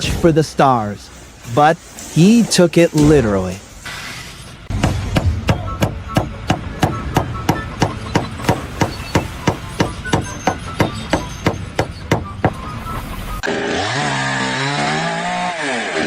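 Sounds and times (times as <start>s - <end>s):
hammer blows with metallic ring: 4.7s - 12.7s.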